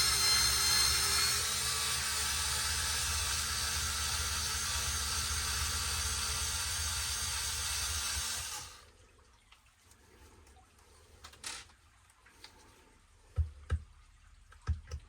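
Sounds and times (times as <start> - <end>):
electric power driver running: 0.0 - 8.8.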